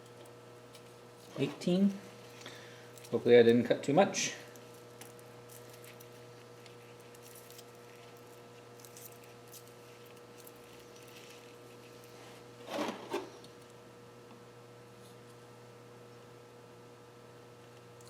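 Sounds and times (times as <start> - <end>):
steady hum: 0.0 - 18.0
small metal clicks and handling: 4.5 - 11.6.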